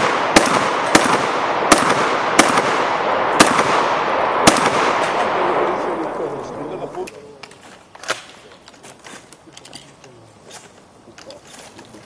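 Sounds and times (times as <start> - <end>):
shotgun shots: 0.0 - 6.3
echoing gunshot noise: 0.0 - 7.0.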